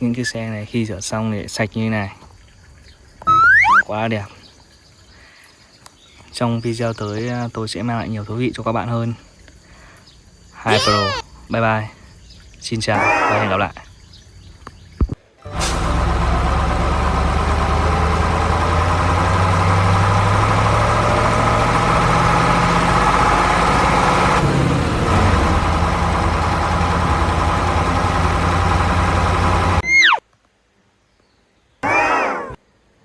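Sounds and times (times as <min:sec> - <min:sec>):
short falling cry: 0:03.3 - 0:03.8, 0:10.7 - 0:11.2
engine running: 0:15.5 - 0:29.8.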